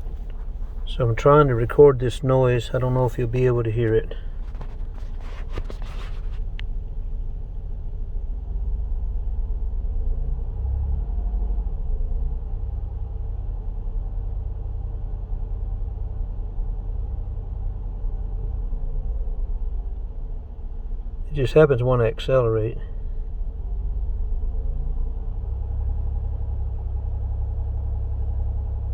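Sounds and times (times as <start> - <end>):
car cabin road rumble: 0.0 - 10.7, 19.6 - 26.9.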